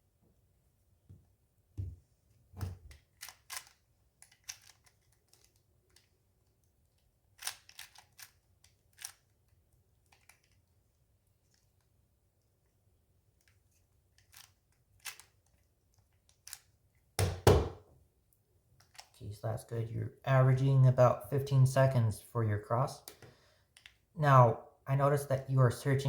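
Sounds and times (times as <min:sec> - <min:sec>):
speed cube clicking: 0:02.9 - 0:06.1, 0:07.4 - 0:09.4, 0:14.2 - 0:15.6.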